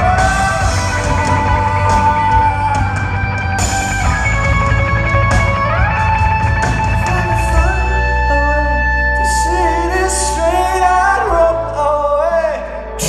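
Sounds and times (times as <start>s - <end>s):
drums and cymbals: 0.0s - 8.3s
electric guitar: 0.0s - 13.0s
live rock band playing: 0.0s - 13.0s.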